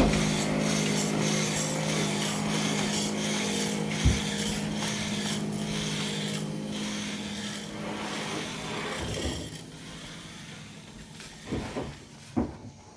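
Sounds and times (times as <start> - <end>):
knock: 0.0 - 0.4
machine hum: 0.0 - 8.7
rasping on wood: 0.0 - 11.0.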